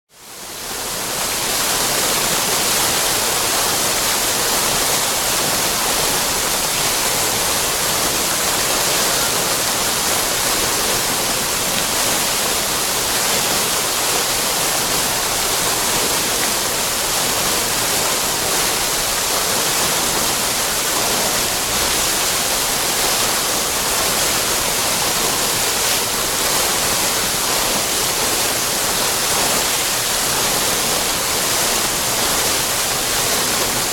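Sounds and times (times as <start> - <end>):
fountain water splashing: 0.2 - 33.9.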